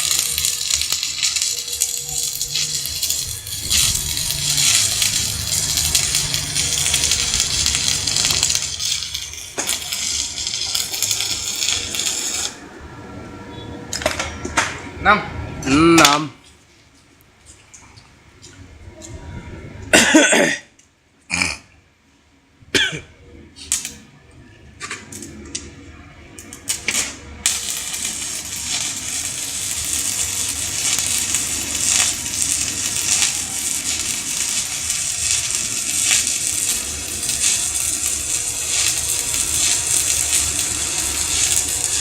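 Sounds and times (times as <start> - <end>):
welding arc crackling and hissing: 0.0 - 12.7, 26.4 - 42.0.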